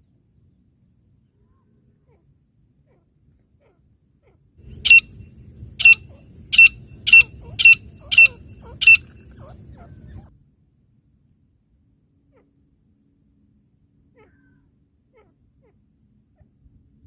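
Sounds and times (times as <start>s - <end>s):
francolin calling: 4.6s - 10.3s.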